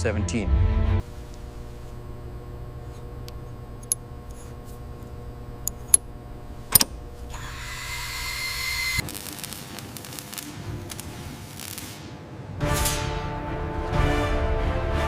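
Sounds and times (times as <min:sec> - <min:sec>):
low mechanical hum: 0:01.0 - 0:13.4
sharp metallic clicks: 0:03.2 - 0:04.6, 0:05.6 - 0:07.0.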